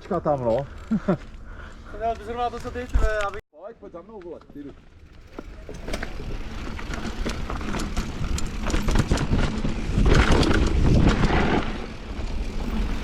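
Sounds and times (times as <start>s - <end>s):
bike tyre noise: 4.6s - 13.0s
bike rattling over bumps: 4.7s - 13.0s.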